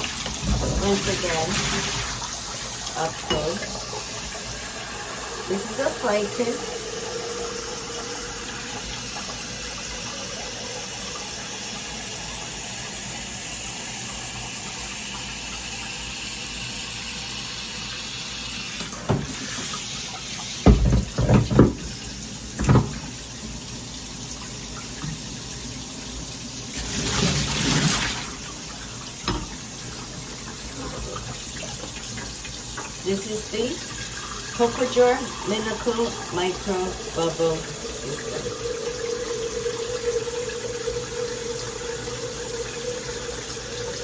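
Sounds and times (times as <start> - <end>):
shower head spraying water: 0.0 - 12.1
knocks: 20.7 - 21.8.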